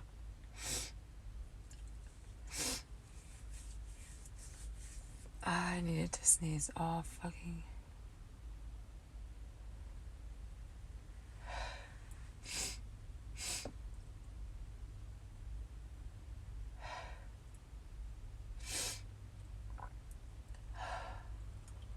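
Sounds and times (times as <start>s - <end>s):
person breathing noisily: 11.4s - 12.8s, 16.8s - 17.3s, 18.6s - 19.0s, 20.7s - 21.4s.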